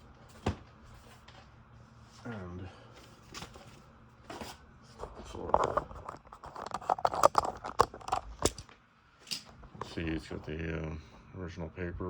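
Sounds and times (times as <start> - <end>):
paper rustling and crinkling: 3.0 - 8.5.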